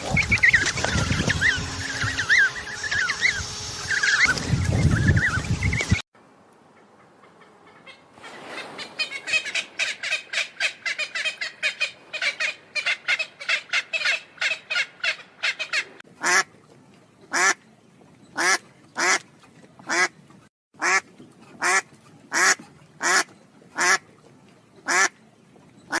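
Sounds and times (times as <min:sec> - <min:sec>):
animal quack-like calls: 0:21.6 - 0:24.0, 0:24.8 - 0:25.1.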